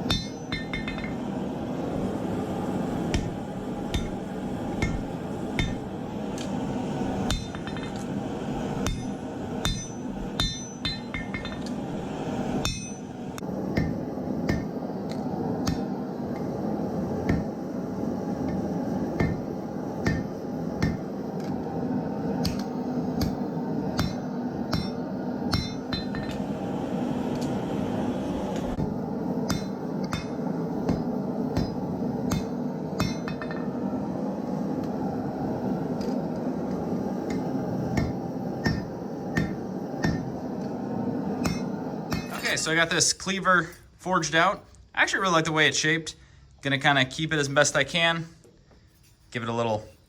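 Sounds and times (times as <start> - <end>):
steady rushing noise: 0.0 - 46.0
hammer striking metal: 0.1 - 1.2, 7.3 - 8.0, 8.8 - 11.7, 12.6 - 13.0, 13.8 - 14.7, 24.0 - 26.4, 31.6 - 33.7, 38.0 - 40.3, 41.4 - 42.6.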